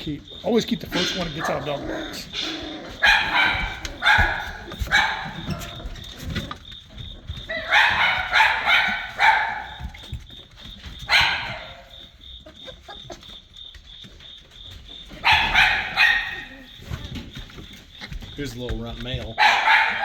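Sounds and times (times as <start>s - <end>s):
puppies yipping: 0.0s - 20.0s.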